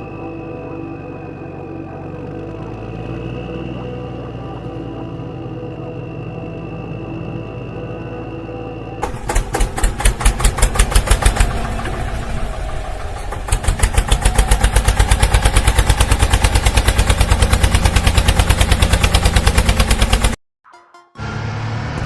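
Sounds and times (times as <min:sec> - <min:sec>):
small engine running: 0:09.0 - 0:20.4.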